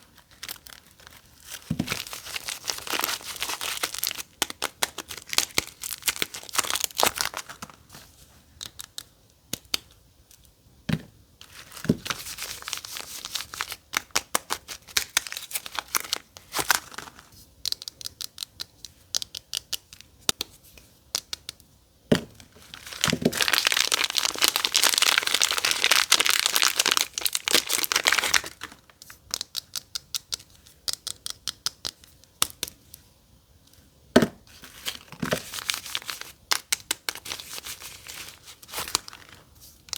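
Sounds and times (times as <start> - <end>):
packaging crinkling and tearing: 0.0 - 8.1, 11.4 - 18.0, 22.4 - 29.7, 34.5 - 39.9.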